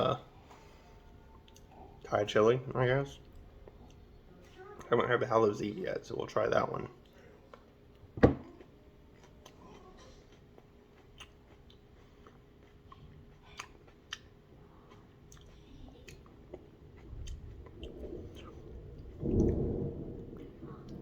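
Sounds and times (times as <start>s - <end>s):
person chewing crunchy pepper: 7.0s - 19.9s.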